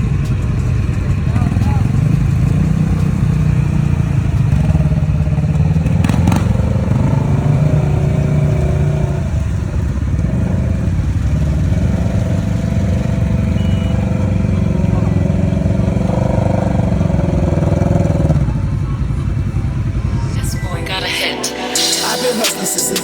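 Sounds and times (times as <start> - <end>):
atv engine running: 0.0 - 20.7.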